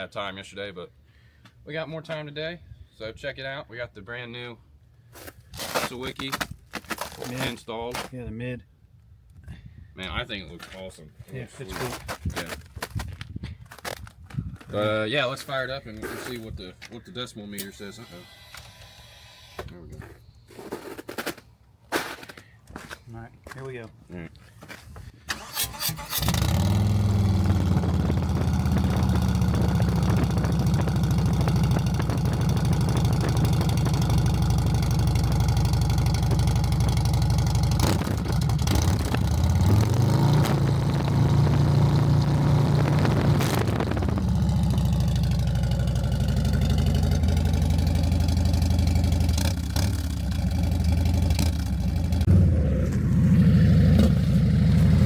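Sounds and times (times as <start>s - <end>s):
motorcycle engine starting and idling: 25.2s - 55.0s
motorcycle engine revving: 25.8s - 55.0s.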